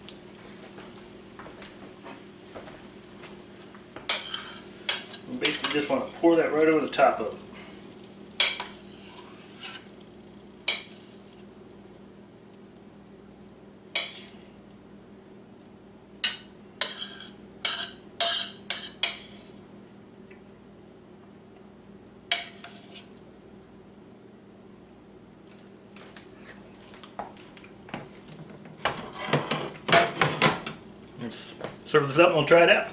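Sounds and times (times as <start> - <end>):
utensil scraping a frying pan: 4.1 - 6.3, 8.4 - 9.9, 13.9 - 14.5, 16.2 - 19.6, 22.3 - 23.1, 29.0 - 30.4.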